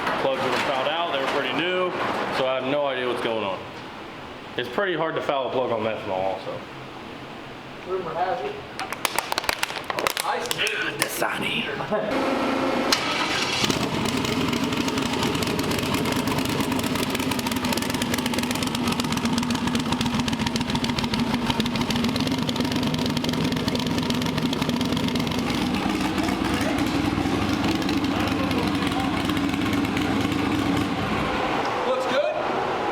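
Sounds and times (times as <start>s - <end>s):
engine starting and idling: 12.2s - 31.3s.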